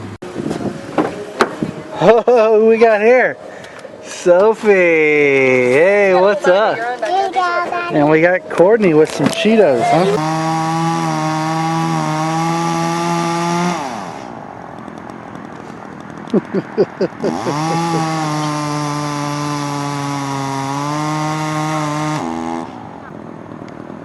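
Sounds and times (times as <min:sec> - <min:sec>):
chainsaw engine revving: 0:09.9 - 0:14.4, 0:16.4 - 0:23.0.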